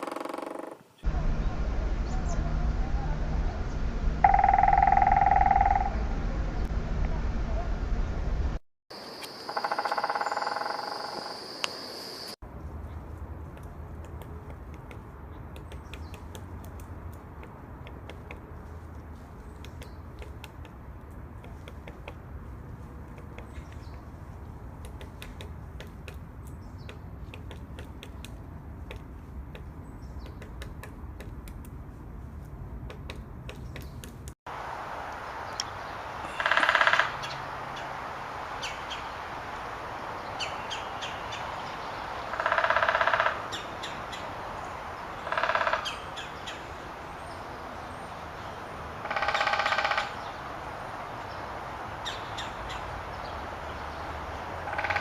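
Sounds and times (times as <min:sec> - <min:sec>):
woodpecker tapping: 0:00.0 - 0:00.8, 0:04.2 - 0:06.0, 0:09.5 - 0:11.3, 0:13.4 - 0:34.3, 0:36.3 - 0:37.4, 0:42.3 - 0:44.2, 0:45.2 - 0:46.6, 0:49.0 - 0:50.2, 0:54.6 - 0:55.0
loud harsh bird calls: 0:36.2 - 0:37.9, 0:42.2 - 0:44.3, 0:45.2 - 0:46.6, 0:49.0 - 0:50.4.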